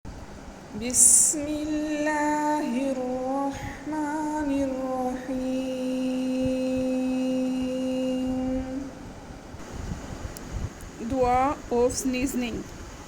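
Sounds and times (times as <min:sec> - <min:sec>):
woman singing: 0:00.7 - 0:09.0.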